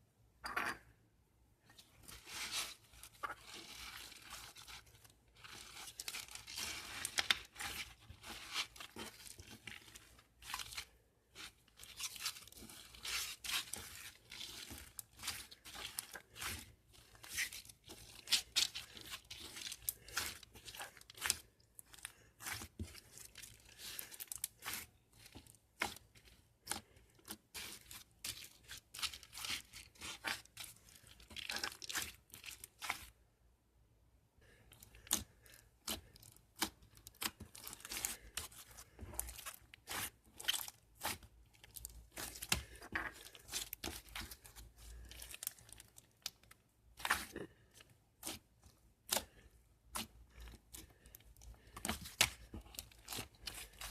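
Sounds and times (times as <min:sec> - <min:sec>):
thin material crinkling and tearing: 0:01.7 - 0:33.2, 0:34.7 - 0:53.9.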